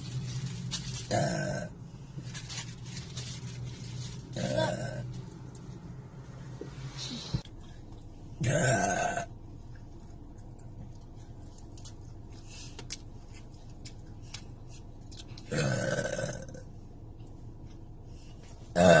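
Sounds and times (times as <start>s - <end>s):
loud burp: 1.1s - 1.7s, 8.4s - 9.3s, 15.5s - 16.6s, 18.8s - 19.0s.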